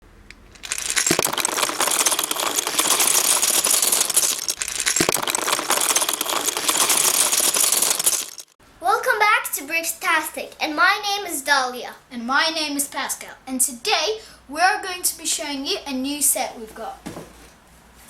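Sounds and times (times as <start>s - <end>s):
small hard objects clattering: 0.3s - 8.6s.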